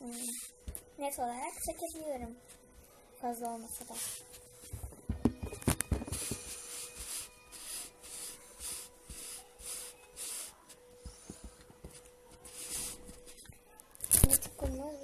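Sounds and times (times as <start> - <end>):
hands rustling kinetic sand: 6.2 - 10.8.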